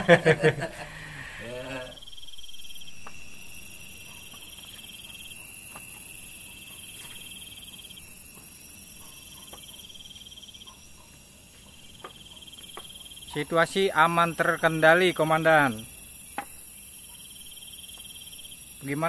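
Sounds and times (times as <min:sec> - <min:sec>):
crickets trilling: 0:00.0 - 0:19.0
faint ticks: 0:02.6 - 0:13.6, 0:15.2 - 0:19.0.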